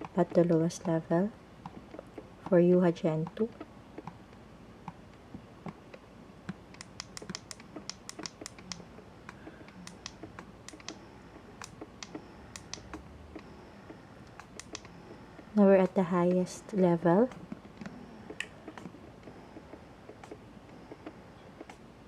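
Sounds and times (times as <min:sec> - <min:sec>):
breast pump clicking softly: 0:05.6 - 0:11.0, 0:11.6 - 0:16.4.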